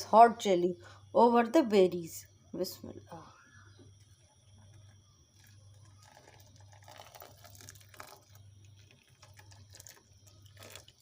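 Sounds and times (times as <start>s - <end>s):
low steady hum: 0.0s - 11.0s
liquid pouring and trickling: 4.7s - 11.0s.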